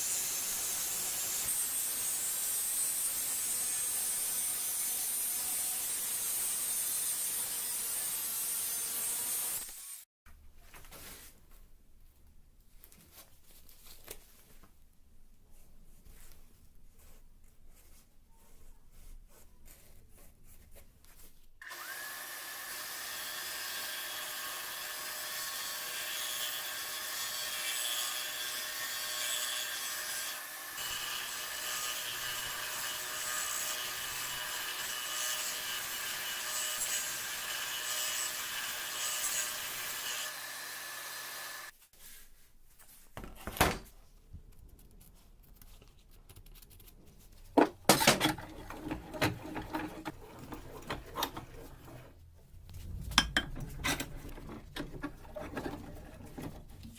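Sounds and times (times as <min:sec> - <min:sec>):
power tool rasping: 0:00.0 - 0:10.1, 0:21.6 - 0:41.7, 0:47.8 - 0:56.9.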